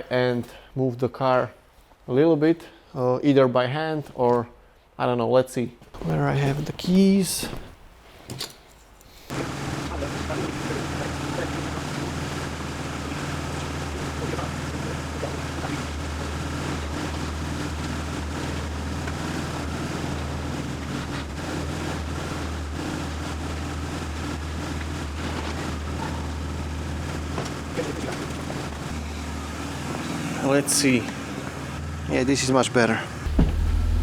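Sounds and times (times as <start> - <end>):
car engine idling: 9.3 - 34.0.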